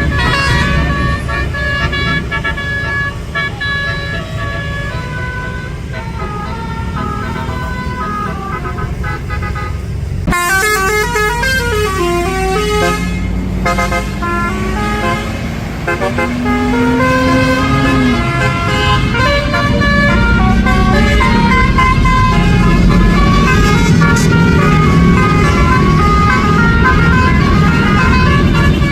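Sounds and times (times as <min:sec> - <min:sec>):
bus engine hum: 0:00.0 - 0:28.9
bus horn playing melodies: 0:00.0 - 0:28.9.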